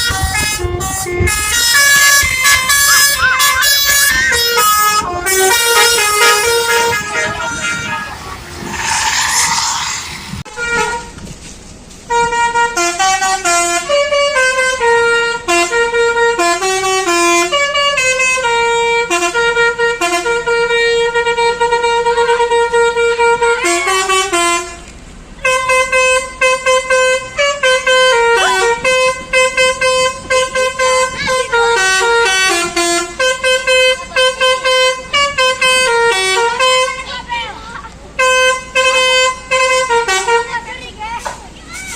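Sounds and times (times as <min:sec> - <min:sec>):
musical bus air horn: 0:00.0 - 0:11.2, 0:12.1 - 0:37.5, 0:38.2 - 0:41.9
rush of noise: 0:01.3 - 0:10.5.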